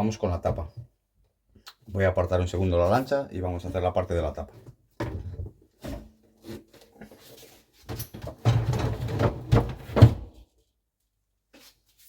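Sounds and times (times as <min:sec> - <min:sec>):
objects knocking and clunking: 0:03.6 - 0:10.5.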